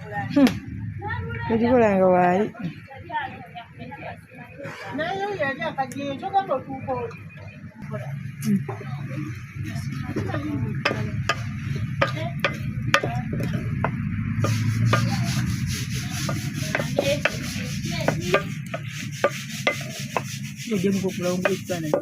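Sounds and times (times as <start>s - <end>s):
low rumble: 0.0s - 2.9s, 7.2s - 18.8s
rubbing and scraping: 10.3s - 22.0s
sharp knocks: 10.8s - 15.1s.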